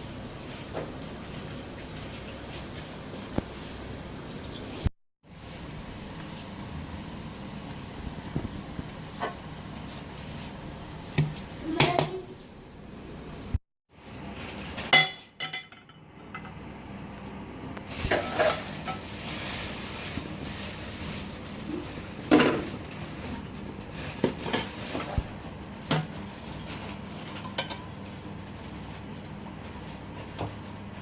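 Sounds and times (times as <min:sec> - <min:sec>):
food sizzling: 0:00.0 - 0:14.8, 0:17.9 - 0:25.4.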